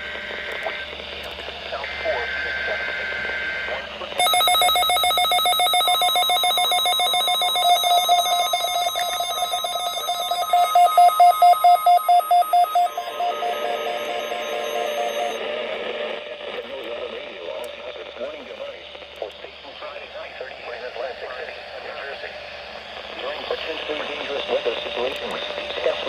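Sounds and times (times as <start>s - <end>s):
electronic alarm beeping: 4.2s - 15.4s.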